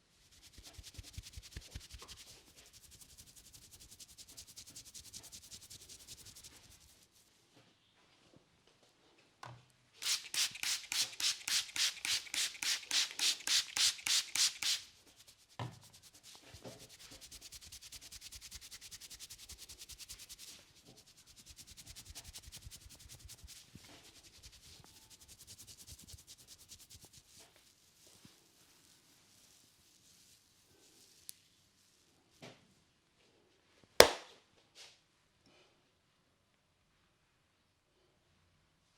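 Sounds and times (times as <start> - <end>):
hands rubbing hair: 0.2 - 7.3, 10.0 - 31.4.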